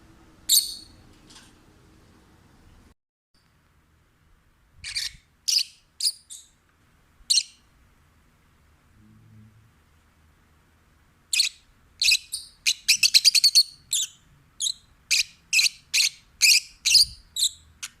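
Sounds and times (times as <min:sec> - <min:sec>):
bird chirping: 0:00.5 - 0:01.0, 0:04.8 - 0:06.6, 0:07.3 - 0:07.7, 0:11.3 - 0:18.0.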